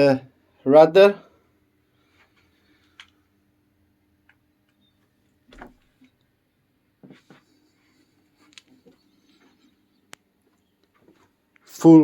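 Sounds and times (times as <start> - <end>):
faint steady hum: 0.0 - 12.0.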